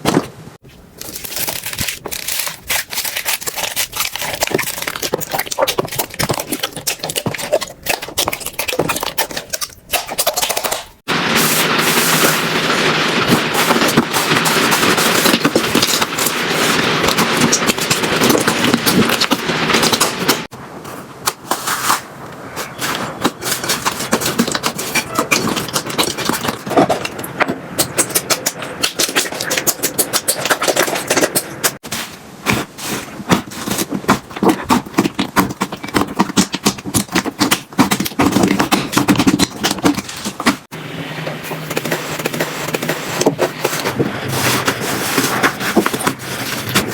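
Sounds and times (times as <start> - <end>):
slime squishing and popping: 1.0 - 11.0, 32.5 - 40.6.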